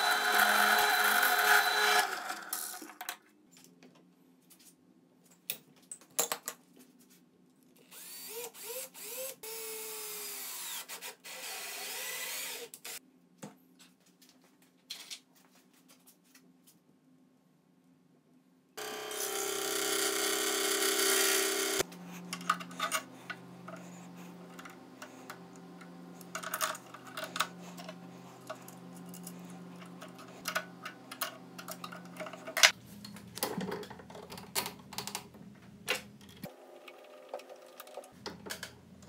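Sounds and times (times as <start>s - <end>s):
power tool motor whine: 0.0s - 2.7s.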